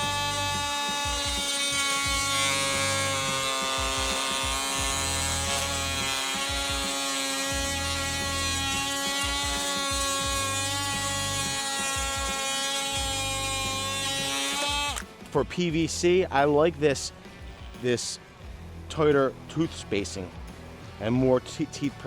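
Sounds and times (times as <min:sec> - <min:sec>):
oscillating multi-tool whining: 0:00.0 - 0:15.0.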